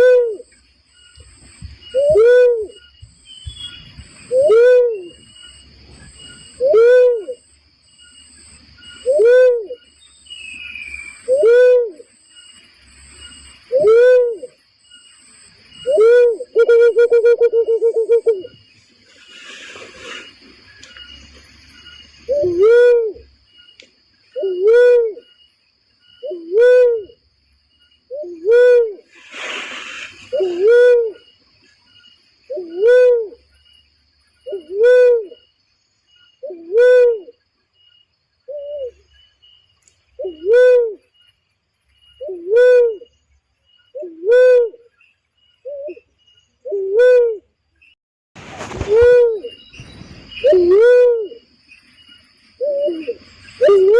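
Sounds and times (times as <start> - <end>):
dove cooing: 0.0 - 0.4, 1.9 - 2.8, 6.6 - 7.4, 15.8 - 18.6, 22.3 - 23.3, 24.4 - 25.2, 26.2 - 27.2, 30.3 - 31.2, 32.5 - 33.4, 34.5 - 35.4, 38.5 - 39.0, 40.2 - 41.0, 50.4 - 51.4, 52.6 - 53.9
brief hiss: 19.0 - 21.0, 29.1 - 30.5, 48.4 - 49.2.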